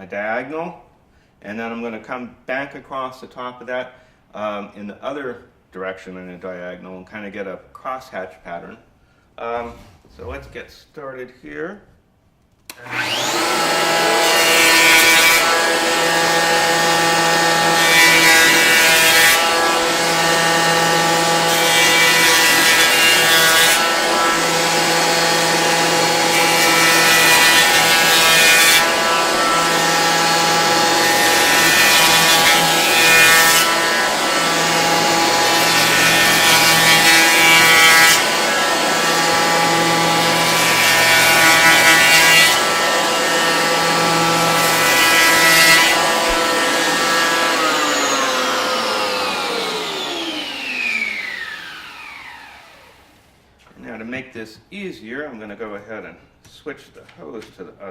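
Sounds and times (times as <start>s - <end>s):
electric planer cutting wood: 12.7s - 53.2s.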